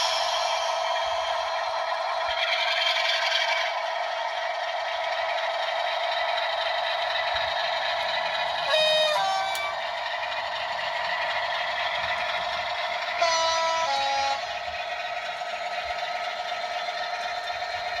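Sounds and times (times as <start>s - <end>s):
diesel engine drone: 0.0s - 18.0s
two-tone horn: 8.6s - 9.8s, 13.2s - 14.7s.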